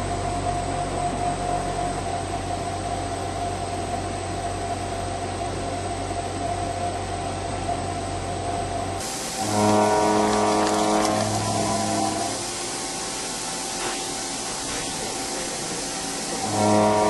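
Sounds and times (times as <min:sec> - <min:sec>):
low hum: 0:00.0 - 0:13.4
machine whine: 0:00.0 - 0:17.0
machine hissing: 0:09.0 - 0:17.0.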